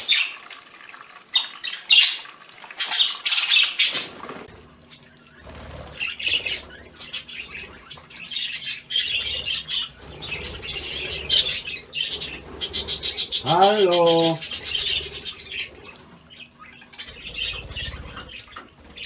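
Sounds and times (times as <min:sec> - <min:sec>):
birds wings fluttering: 0:02.2 - 0:19.0
bird squawks and chirps: 0:05.9 - 0:19.0.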